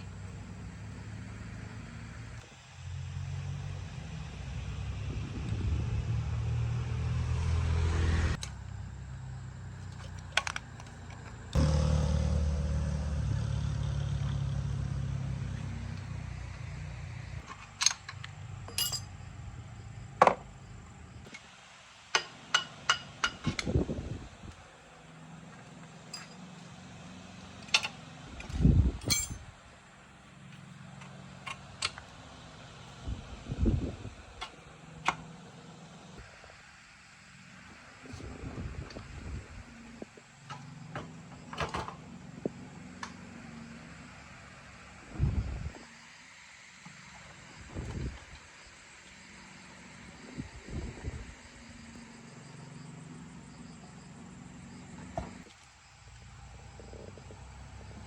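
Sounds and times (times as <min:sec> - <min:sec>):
motor running: 0:09.8 - 0:17.4
metallic clinks of tools: 0:17.8 - 0:19.2, 0:26.1 - 0:26.5, 0:29.0 - 0:29.4.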